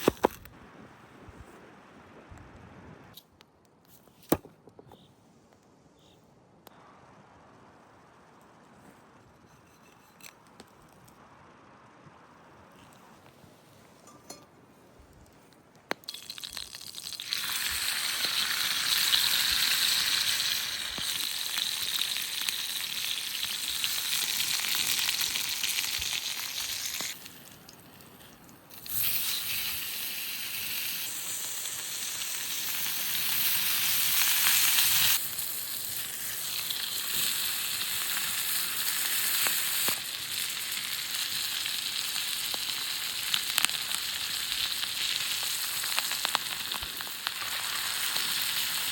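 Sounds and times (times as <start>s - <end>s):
food sizzling in a pan: 16.1s - 27.4s, 28.8s - 48.9s.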